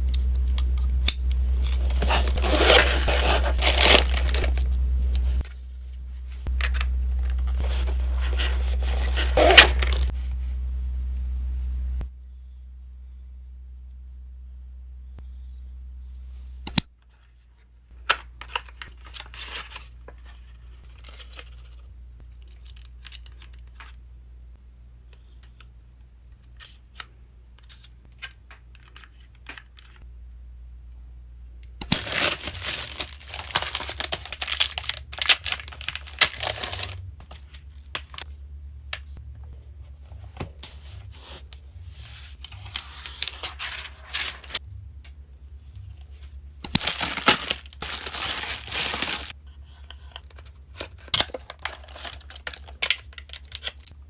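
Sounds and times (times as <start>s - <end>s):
packaging crinkling: 1.6s - 5.4s, 31.9s - 38.2s, 46.7s - 49.4s, 50.2s - 53.9s
wrapping tearing: 1.7s - 4.6s, 31.9s - 37.4s, 46.7s - 49.4s, 50.8s - 53.9s.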